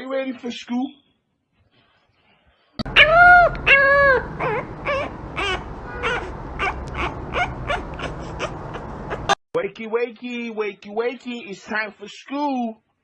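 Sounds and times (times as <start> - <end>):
dog whining and whimpering: 2.8 - 9.4.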